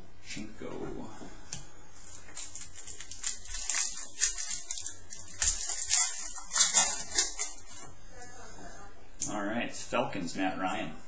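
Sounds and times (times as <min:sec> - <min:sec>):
foil wrapper crinkling and tearing: 0:02.0 - 0:07.8.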